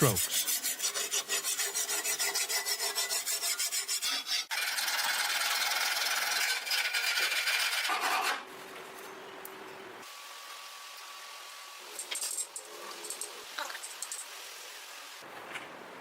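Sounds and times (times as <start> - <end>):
file rasping on steel blade: 0.0 - 8.4.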